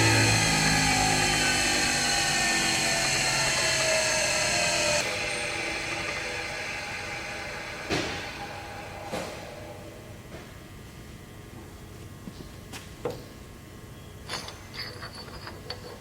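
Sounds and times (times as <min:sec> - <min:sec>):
surface grinder whining: 0:00.0 - 0:10.0.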